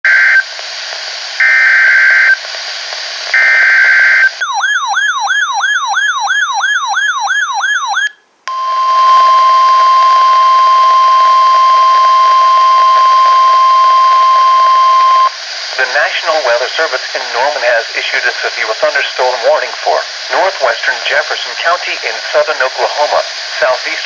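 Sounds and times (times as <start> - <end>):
radio hiss: 0.1 - 4.4, 12.9 - 24.0
steady alarm tone: 3.4 - 15.3.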